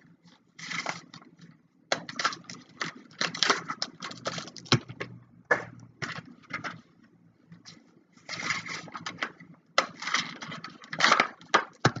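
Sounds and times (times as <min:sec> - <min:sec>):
plastic packaging crinkling: 0:00.6 - 0:05.0.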